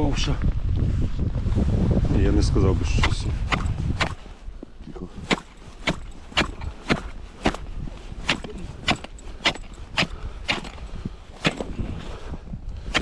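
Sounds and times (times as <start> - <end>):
footsteps crunching in snow: 2.8 - 12.3.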